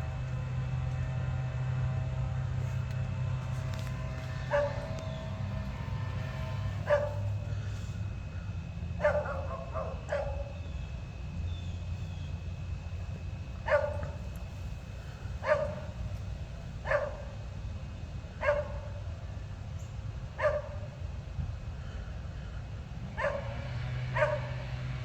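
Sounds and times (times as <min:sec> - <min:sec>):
steady low hum: 0:00.0 - 0:25.0
dog barking: 0:04.3 - 0:05.2, 0:06.6 - 0:07.4, 0:09.0 - 0:10.6, 0:13.6 - 0:14.2, 0:15.4 - 0:16.0, 0:16.8 - 0:17.4, 0:18.4 - 0:19.0, 0:20.4 - 0:20.8, 0:23.2 - 0:24.6.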